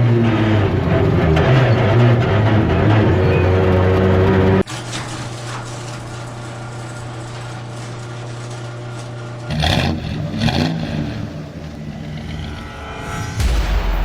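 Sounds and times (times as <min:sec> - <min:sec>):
race car engine revving: 0:00.0 - 0:04.6, 0:09.4 - 0:14.0.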